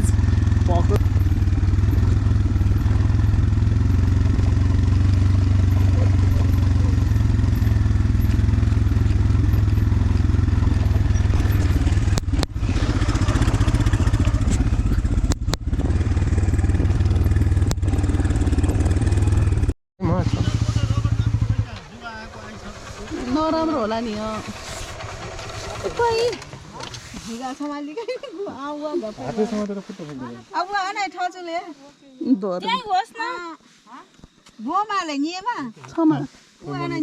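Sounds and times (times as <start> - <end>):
motor scooter engine and road rumble: 0.0 - 27.8.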